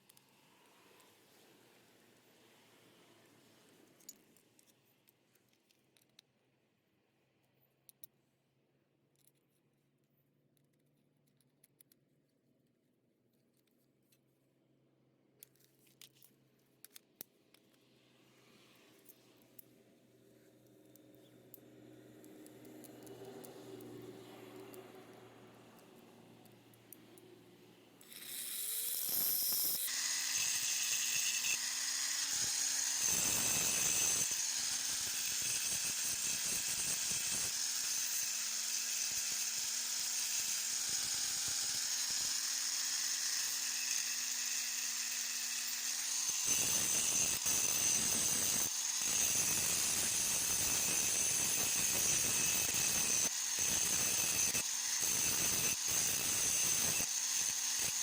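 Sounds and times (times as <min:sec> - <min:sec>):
angle grinder motor whine: 0:28.0 - 0:58.0.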